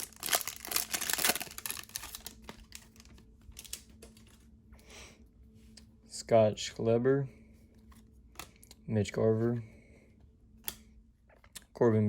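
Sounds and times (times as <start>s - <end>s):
foil wrapper crinkling: 0.0s - 4.4s.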